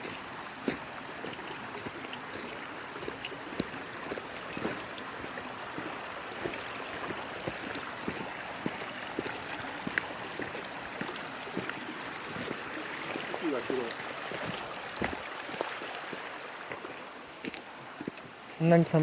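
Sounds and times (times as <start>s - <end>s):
stream flowing: 0.0s - 19.0s.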